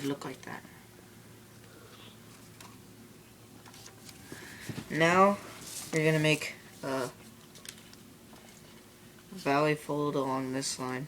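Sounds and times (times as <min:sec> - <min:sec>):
paper rustling and ticking: 0:03.6 - 0:08.6.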